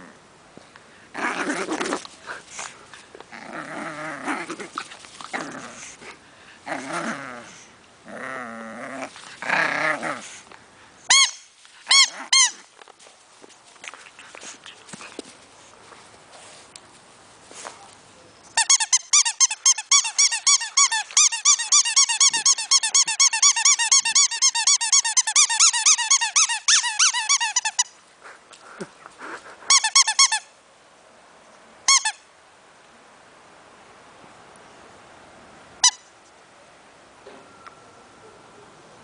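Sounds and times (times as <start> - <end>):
squeaky dog toy squeaking: 11.1 - 12.6, 18.6 - 28.0, 29.7 - 30.5, 31.9 - 32.2, 35.8 - 36.1.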